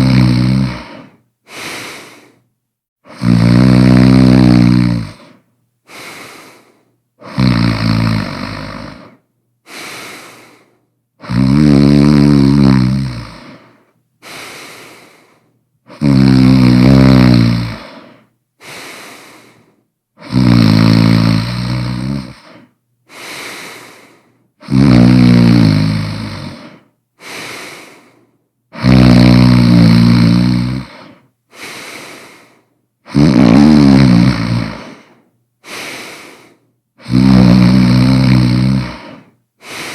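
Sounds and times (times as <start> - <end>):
person snoring loudly: 0.0 - 2.4, 3.0 - 6.6, 7.2 - 10.6, 11.2 - 15.2, 15.9 - 39.9
quiet breath: 0.7 - 3.2, 5.0 - 7.4, 8.6 - 11.0, 13.3 - 16.1, 17.7 - 20.3, 22.0 - 24.7, 26.3 - 28.8, 30.5 - 33.2, 34.7 - 39.9.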